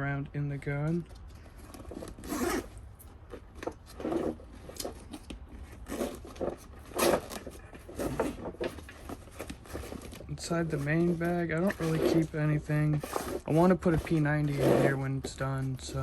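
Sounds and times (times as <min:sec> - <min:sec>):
bag fabric rubbing: 0:01.5 - 0:16.0
zipper being pulled open: 0:01.6 - 0:02.8, 0:03.4 - 0:10.2, 0:13.0 - 0:15.3.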